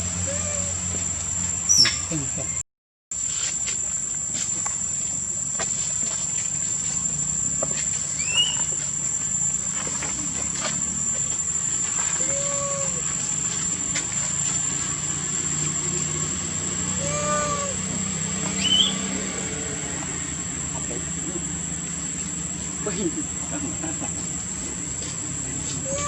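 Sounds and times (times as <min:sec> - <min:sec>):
high insect drone: 0:00.0 - 0:02.6, 0:03.2 - 0:26.0
baby monkey calls: 0:00.2 - 0:00.8, 0:08.2 - 0:08.7, 0:11.9 - 0:13.3, 0:16.9 - 0:17.9, 0:18.5 - 0:19.1.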